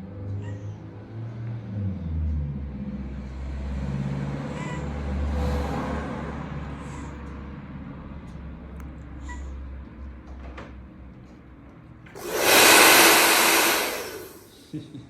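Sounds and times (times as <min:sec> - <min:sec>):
hair dryer blowing: 0:12.2 - 0:14.5.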